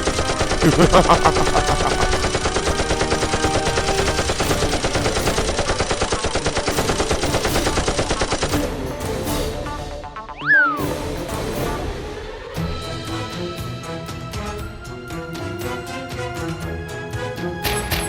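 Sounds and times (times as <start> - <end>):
rapid automatic gunfire: 0.0 - 8.8.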